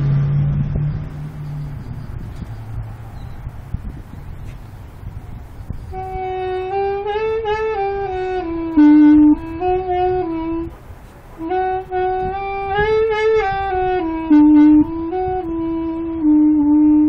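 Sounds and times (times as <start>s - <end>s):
homemade saxophone melody: 5.8s - 17.0s.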